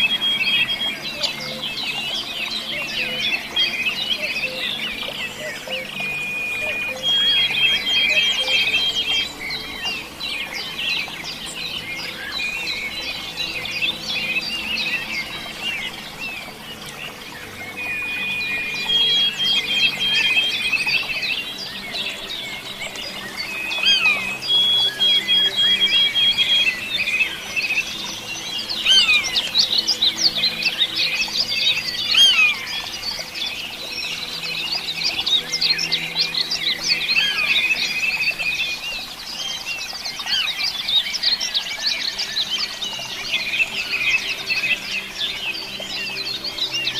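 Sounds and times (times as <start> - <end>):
small birds chirping: 0.0 - 46.9
steady whistled bird notes: 0.0 - 46.9.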